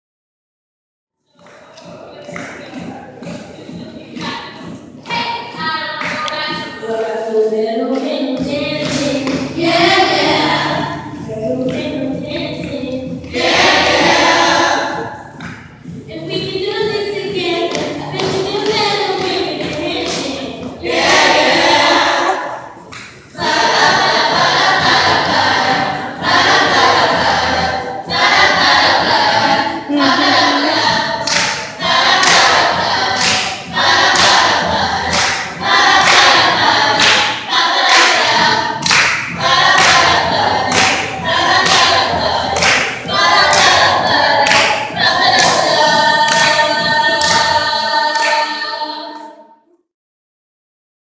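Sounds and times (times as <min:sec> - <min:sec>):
choir singing: 0:06.8 - 0:15.4, 0:16.1 - 0:49.6
percussive hits: 0:30.0 - 0:47.6.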